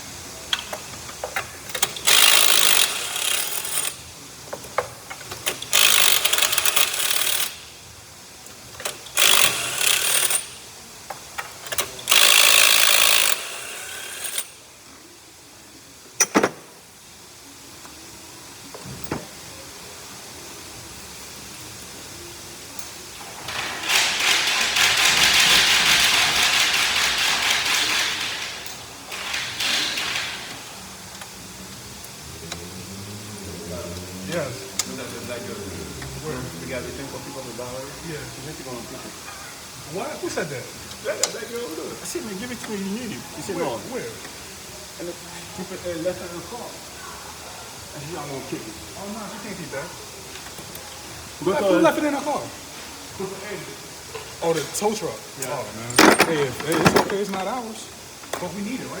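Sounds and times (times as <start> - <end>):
power wrench running: 0.6 - 7.7, 8.8 - 10.7, 11.4 - 14.6, 23.2 - 31.4.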